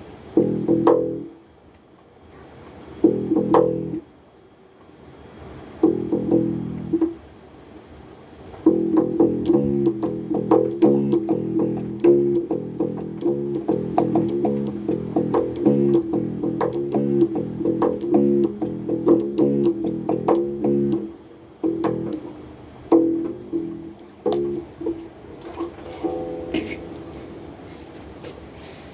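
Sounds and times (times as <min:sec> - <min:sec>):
bass guitar plucked notes: 0:00.4 - 0:01.3, 0:03.0 - 0:04.0, 0:05.8 - 0:07.2, 0:08.7 - 0:25.0, 0:26.0 - 0:27.6.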